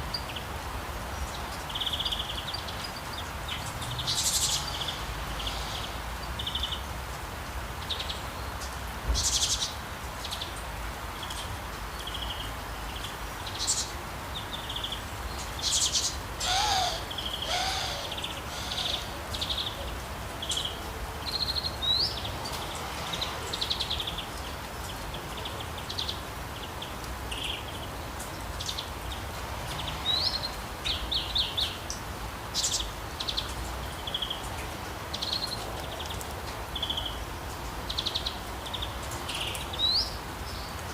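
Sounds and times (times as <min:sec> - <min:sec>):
rain hiss: 0:00.0 - 0:40.9
birds chirping and trilling: 0:11.3 - 0:22.4
lower sliding bird calls: 0:16.4 - 0:19.7.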